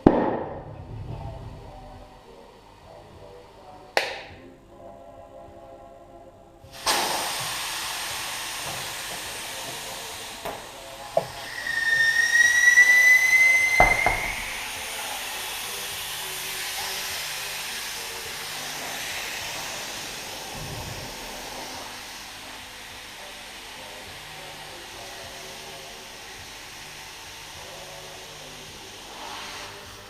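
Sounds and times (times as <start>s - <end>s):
compressed air hissing into tire: 6.7s - 30.0s
whistling air tone: 11.3s - 15.8s
sharp knock: 13.8s - 14.7s.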